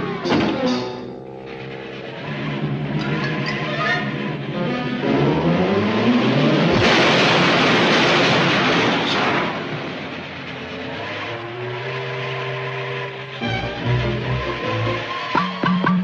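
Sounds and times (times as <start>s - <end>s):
steady held notes: 0.6s - 6.6s, 10.5s - 16.0s
loud rushing noise: 4.0s - 16.0s
tone rising in pitch: 11.6s - 16.0s.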